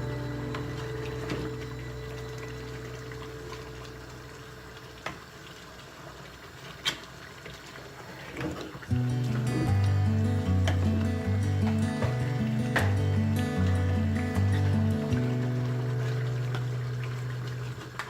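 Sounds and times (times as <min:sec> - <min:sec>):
background music: 0:00.0 - 0:04.2, 0:08.9 - 0:17.4
pot of soup bubbling: 0:00.0 - 0:18.0.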